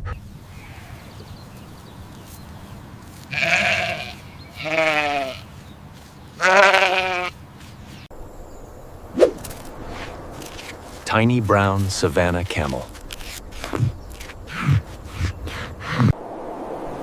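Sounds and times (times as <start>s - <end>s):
goat bleating: 3.3s - 5.5s, 6.4s - 7.4s.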